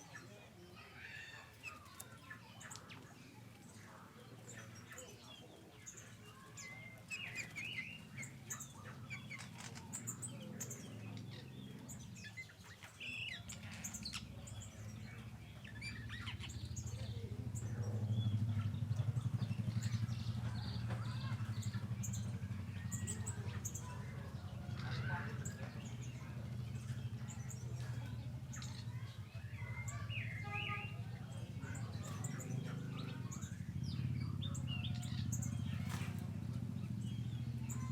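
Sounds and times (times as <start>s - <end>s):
small birds chirping: 0.0s - 37.9s
steady low hum: 13.2s - 37.9s.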